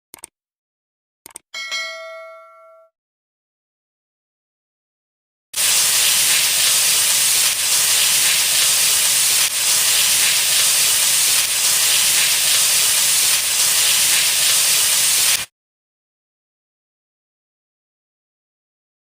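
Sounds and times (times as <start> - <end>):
food sizzling in hot oil: 5.6 - 15.5.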